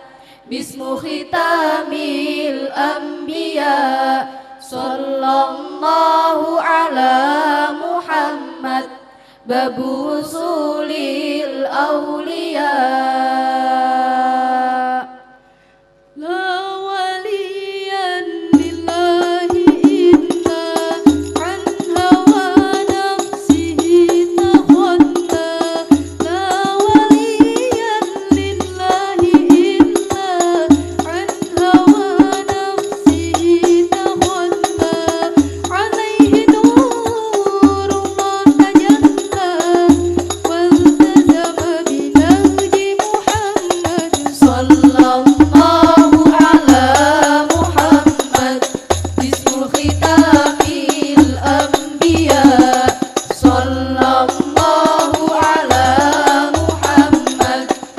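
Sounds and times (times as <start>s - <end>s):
voices singing a held melody: 0.0s - 15.2s, 16.2s - 57.9s
frame drums fast rhythm: 18.5s - 57.9s.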